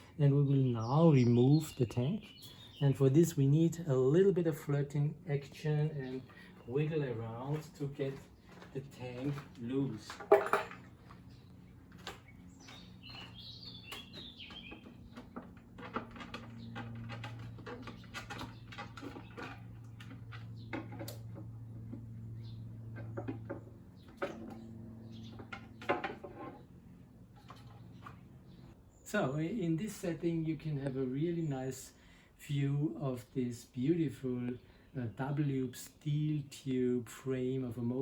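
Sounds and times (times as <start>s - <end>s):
steady low hum: 0.0s - 38.0s
metal clicks knocks and scrapes: 13.9s - 22.2s, 22.9s - 26.7s.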